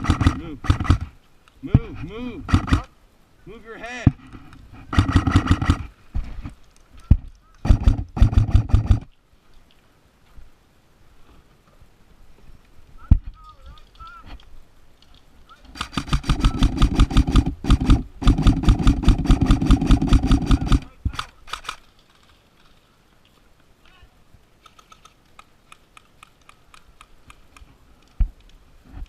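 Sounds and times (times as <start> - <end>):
distant gunfire: 0.0 - 1.1, 2.4 - 2.9, 4.9 - 5.9, 7.6 - 9.1, 15.7 - 21.8
airsoft gun firing bursts: 0.0 - 1.2, 2.4 - 2.9, 4.9 - 5.9, 7.6 - 9.1, 15.7 - 21.8.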